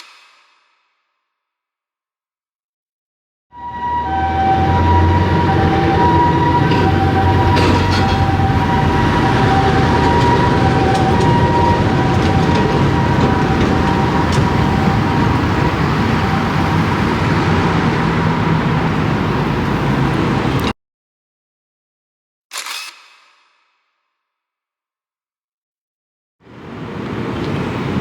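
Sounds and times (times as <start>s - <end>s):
large vehicle engine rumble: 3.6s - 20.7s, 26.6s - 28.0s
road noise: 3.6s - 20.7s, 26.4s - 28.0s.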